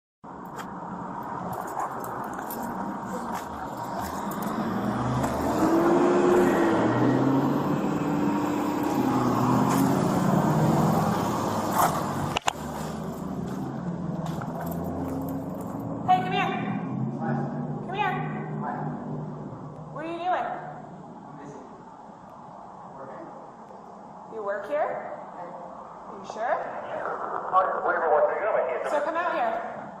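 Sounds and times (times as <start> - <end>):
road noise inside car: 0.3 - 30.0
car engine revving: 0.9 - 19.8.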